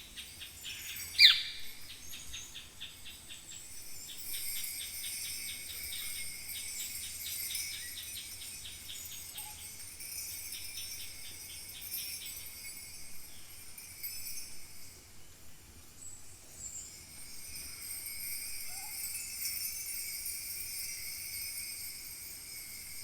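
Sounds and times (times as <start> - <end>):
bronze bells jingling: 0.0 - 15.2, 16.3 - 23.0.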